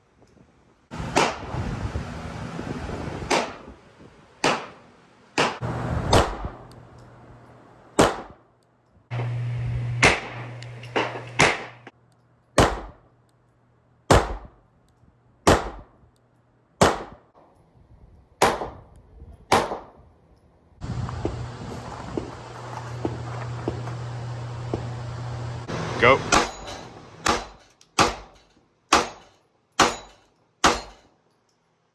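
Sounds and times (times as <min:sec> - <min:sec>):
pistol shots with echo: 0:08.0 - 0:08.4, 0:12.6 - 0:13.0, 0:14.1 - 0:14.6, 0:15.5 - 0:16.0, 0:16.8 - 0:17.3, 0:18.4 - 0:18.8, 0:19.5 - 0:20.0, 0:26.3 - 0:31.0.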